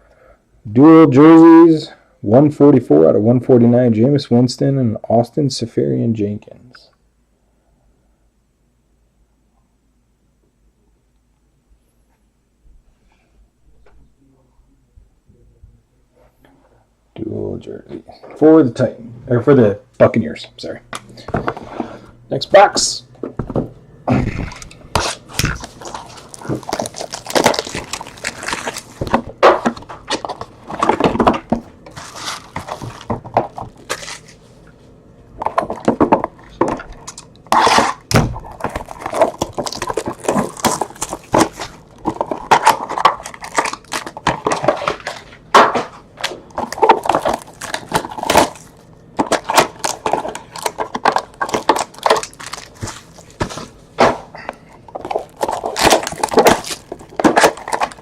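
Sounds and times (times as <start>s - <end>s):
plastic and cardboard crackling: 23.2s - 34.6s, 35.4s - 58.0s.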